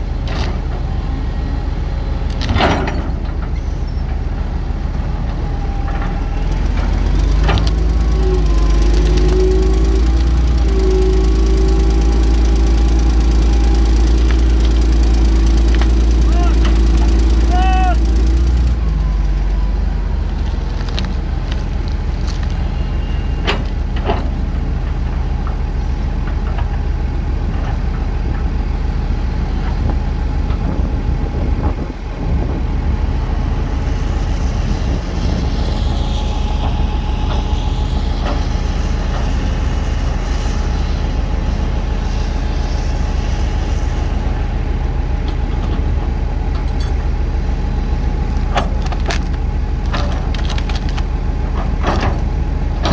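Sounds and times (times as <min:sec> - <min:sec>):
heavy diesel engine running: 0:00.0 - 0:52.9.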